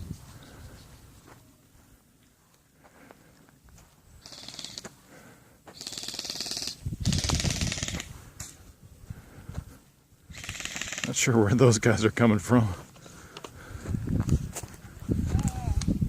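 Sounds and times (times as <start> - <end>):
airsoft guns firing bursts: 4.2 - 4.8, 5.8 - 8.1, 10.3 - 11.3.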